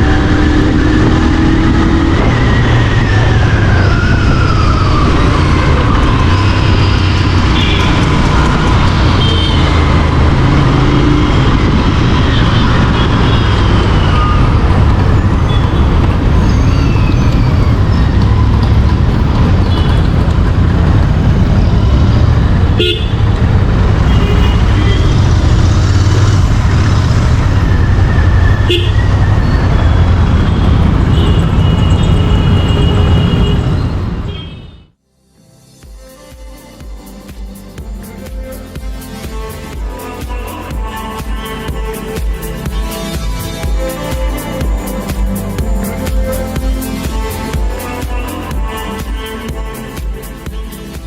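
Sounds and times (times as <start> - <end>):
motorcycle engine running: 17.6 - 33.4
music: 35.0 - 51.0.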